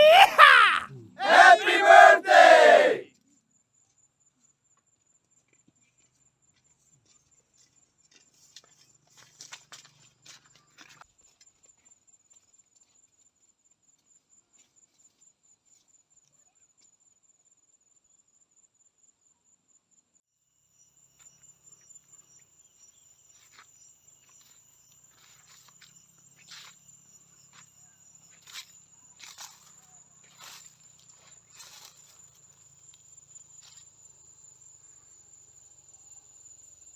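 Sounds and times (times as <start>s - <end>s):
high-pitched insect trill: 20.6s - 36.9s.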